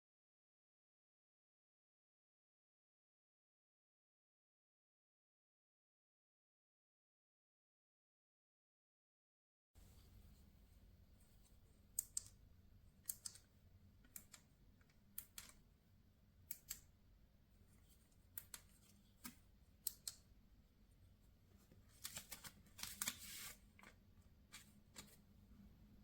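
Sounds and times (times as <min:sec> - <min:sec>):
small sharp clicks: 0:12.0 - 0:12.4, 0:13.0 - 0:15.6, 0:16.5 - 0:16.9, 0:18.4 - 0:20.2.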